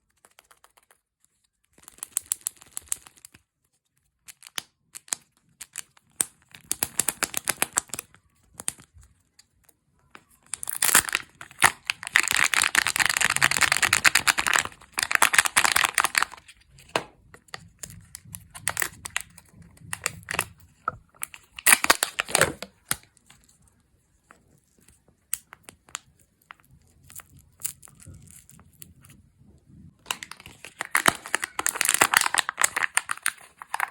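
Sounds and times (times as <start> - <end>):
wrapper crinkling and tearing: 4.3 - 9.3, 10.2 - 23.6, 30.0 - 33.9.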